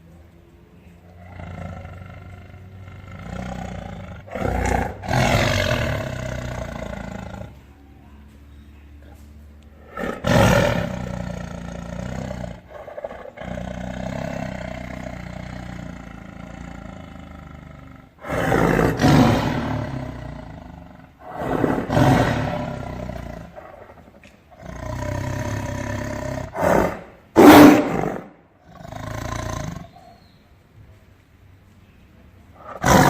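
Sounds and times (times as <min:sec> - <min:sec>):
tiger roaring: 0:01.0 - 0:07.7, 0:09.7 - 0:30.1, 0:32.5 - 0:33.0.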